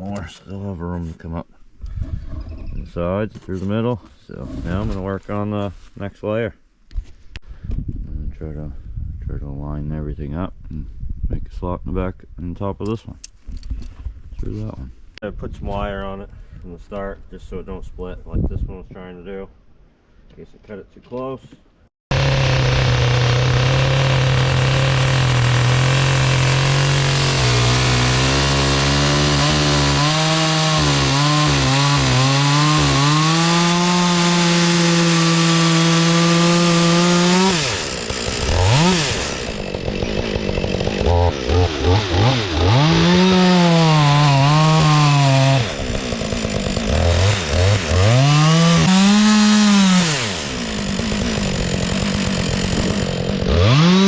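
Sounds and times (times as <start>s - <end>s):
chainsaw cutting log: 22.1s - 54.0s.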